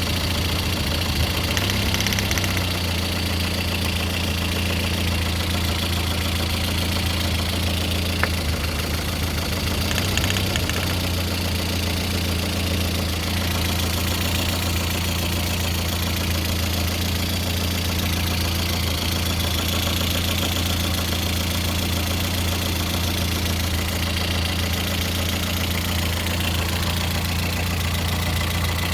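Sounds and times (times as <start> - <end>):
car engine idling with knock: 0.0 - 28.9.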